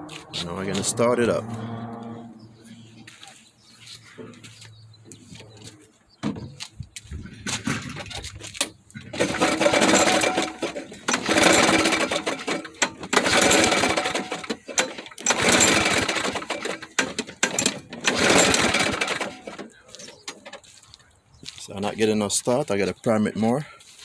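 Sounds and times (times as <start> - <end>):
lawn mower engine cranking: 7.5 - 20.7.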